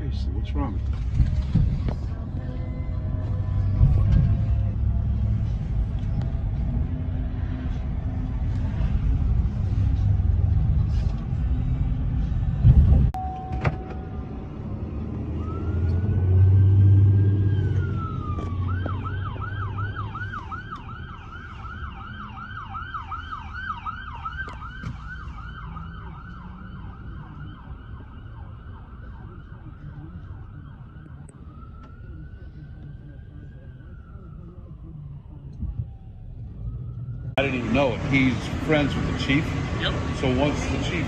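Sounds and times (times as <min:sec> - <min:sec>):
truck engine rumble: 0:00.0 - 0:41.0
fire truck siren wailing: 0:13.2 - 0:41.0.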